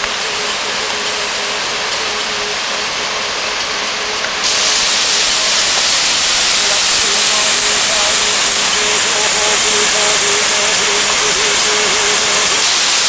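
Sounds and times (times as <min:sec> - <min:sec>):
waterfall rushing: 0:00.0 - 0:13.0.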